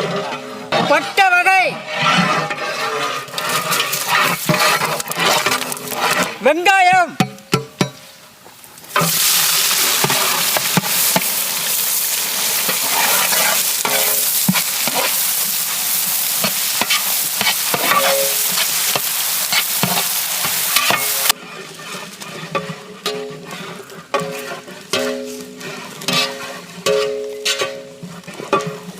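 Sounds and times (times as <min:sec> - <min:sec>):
onions sizzling in oil: 0:07.2 - 0:28.9.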